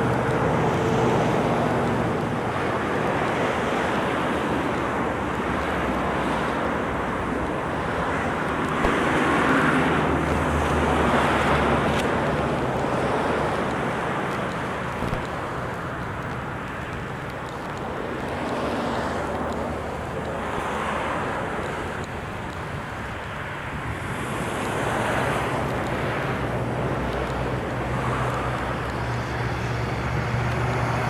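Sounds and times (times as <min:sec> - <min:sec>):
wind buffeting microphone: 0:00.0 - 0:31.0.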